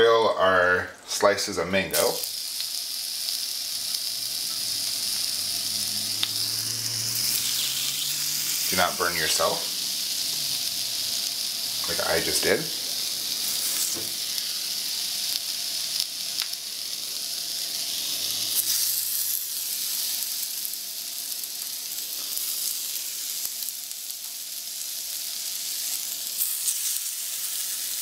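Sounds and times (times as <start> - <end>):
fruit sizzling on a grill: 0.5 - 28.0
crackles and pops: 1.9 - 12.0, 13.4 - 17.1.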